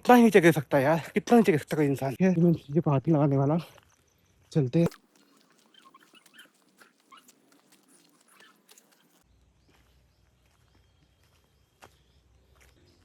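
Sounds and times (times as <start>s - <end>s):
faint ticks and chirps: 3.8s - 13.0s.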